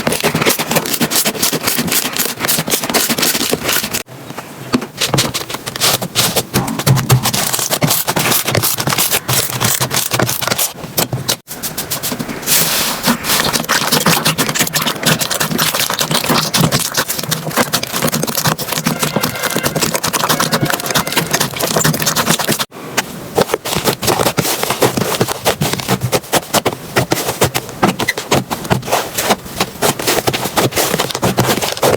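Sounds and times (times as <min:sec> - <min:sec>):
slime crackling and popping: 0:13.3 - 0:22.7.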